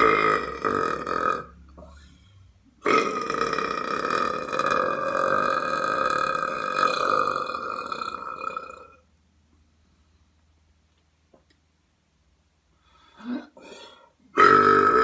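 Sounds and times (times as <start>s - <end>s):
person burping: 0.0s - 2.0s, 2.8s - 9.0s, 13.2s - 15.0s.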